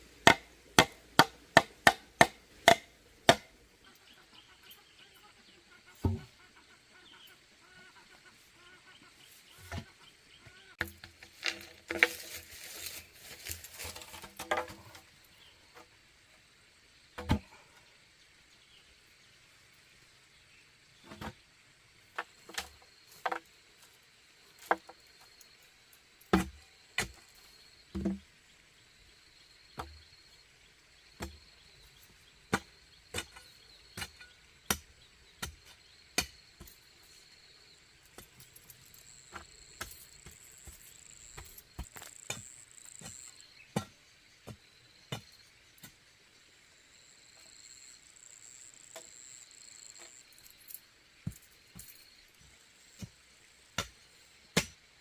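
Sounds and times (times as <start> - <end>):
insects chirring: 0.0 - 55.0
tool knocking on bamboo: 0.2 - 3.5.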